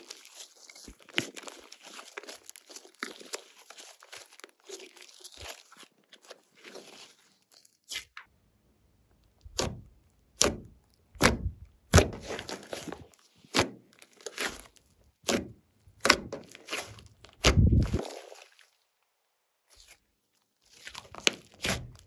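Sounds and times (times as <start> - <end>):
slime slapping and popping: 20.8 - 22.0.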